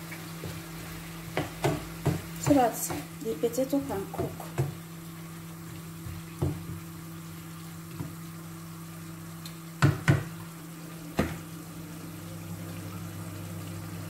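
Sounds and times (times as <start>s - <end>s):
pot of filling cooking: 0.0s - 14.0s
utensil knocking on pot: 1.3s - 3.1s.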